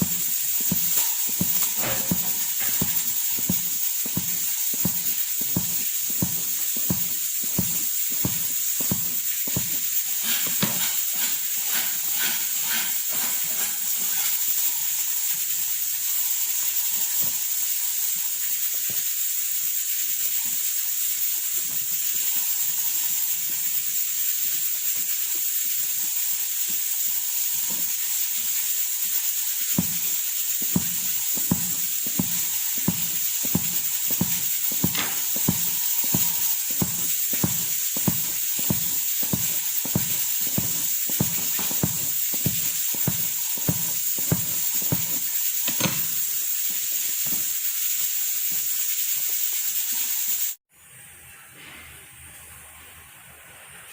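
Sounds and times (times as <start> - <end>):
stirring strokes: 0.0 - 13.0, 29.5 - 45.8
noodles sizzling in pan: 0.0 - 50.6.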